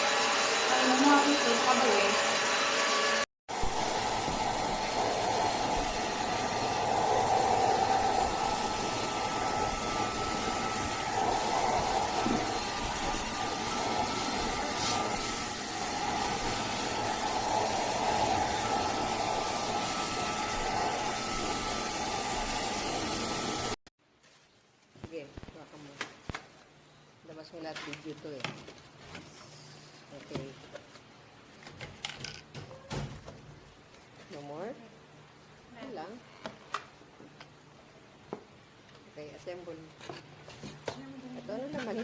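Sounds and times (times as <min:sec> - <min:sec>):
handheld vacuum cleaner running: 0:00.0 - 0:23.8.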